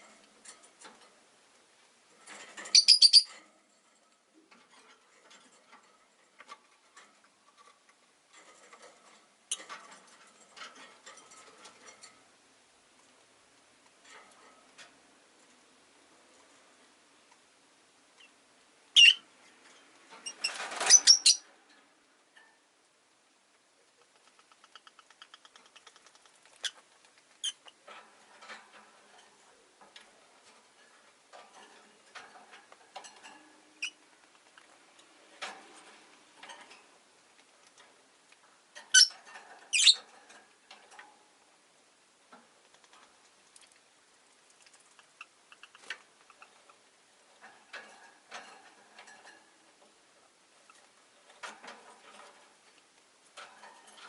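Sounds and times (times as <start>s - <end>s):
lovebirds chirping shrilly: 2.8s - 3.3s, 19.0s - 19.2s
soft scratching and pecking: 3.4s - 17.5s, 23.4s - 54.0s
small ticks: 24.0s - 39.0s, 42.3s - 49.4s.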